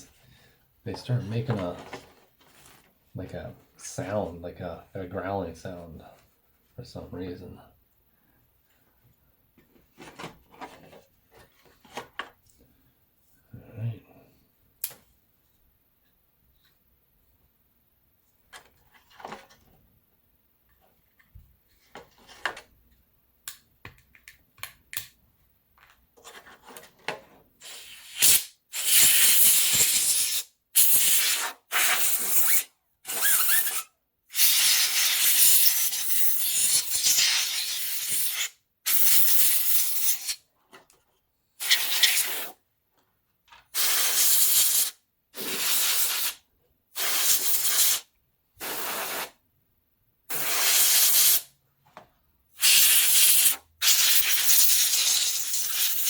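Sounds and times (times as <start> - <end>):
aerosol spray hissing: 27.6 - 40.4, 41.6 - 42.6, 43.8 - 46.4, 47.0 - 49.3, 50.3 - 51.5, 52.6 - 56.0.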